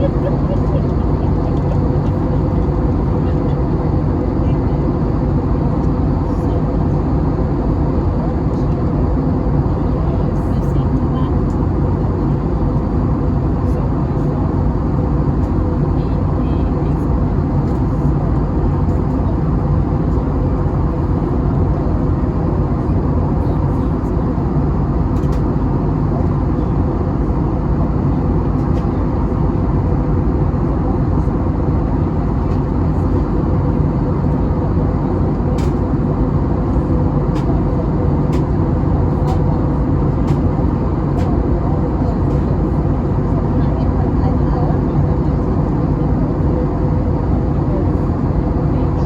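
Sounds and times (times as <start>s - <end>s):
airplane cabin engine noise: 0.0s - 49.0s.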